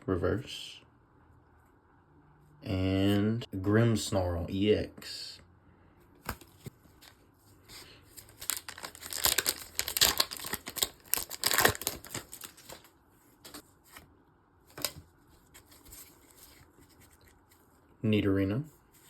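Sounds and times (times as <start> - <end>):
foil wrapper crinkling and tearing: 8.2 - 12.9.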